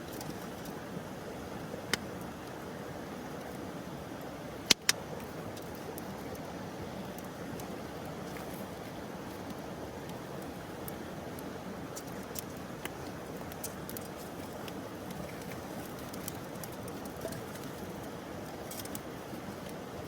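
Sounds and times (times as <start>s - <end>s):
campfire pops and snaps: 4.6s - 5.0s.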